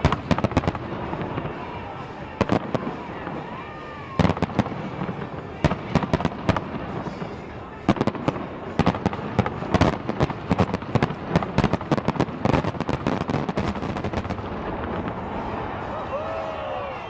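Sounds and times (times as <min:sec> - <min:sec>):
fireworks banging: 0:00.0 - 0:16.1.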